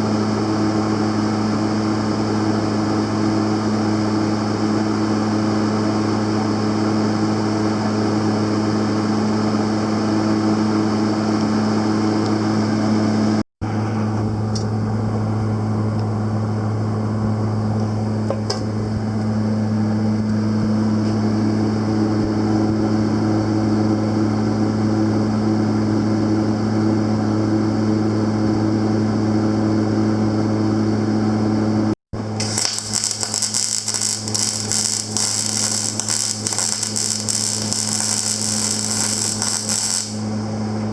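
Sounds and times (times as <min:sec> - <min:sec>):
welding machine hum: 0:32.2 - 0:40.6
welding arc sizzling: 0:32.3 - 0:40.4.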